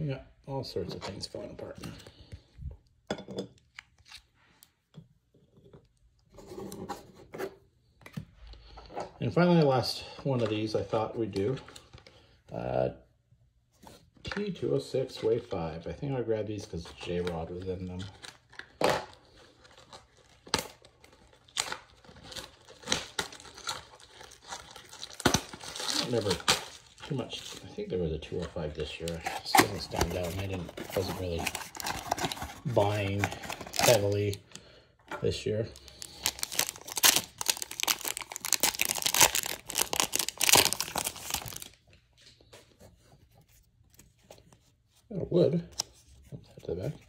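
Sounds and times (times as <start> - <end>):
faint handling of cards: 0.6 - 3.0, 16.5 - 47.0
wrapper crinkling and tearing: 17.2 - 27.6, 29.0 - 34.4, 35.8 - 41.9.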